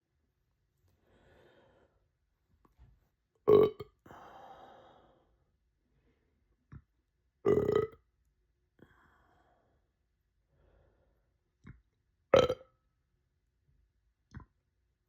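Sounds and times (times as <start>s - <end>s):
soft breathy sound: 0.8s - 2.1s, 4.0s - 6.4s, 8.8s - 9.9s
person burping loudly: 3.5s - 4.0s, 7.4s - 8.0s, 12.4s - 12.7s.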